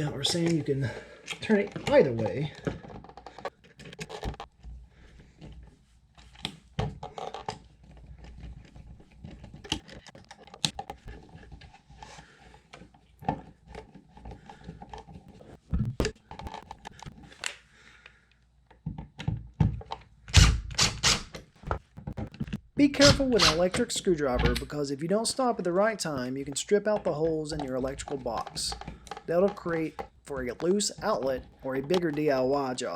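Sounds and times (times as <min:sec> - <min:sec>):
screwdriver driving screws: 0:20.3 - 0:21.5, 0:23.0 - 0:23.8.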